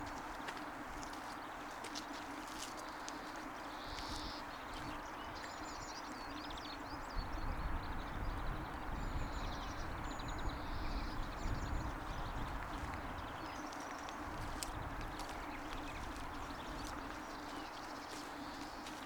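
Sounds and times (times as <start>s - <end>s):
songbirds chirping: 0.0s - 19.0s
wind buffeting microphone: 6.6s - 18.9s.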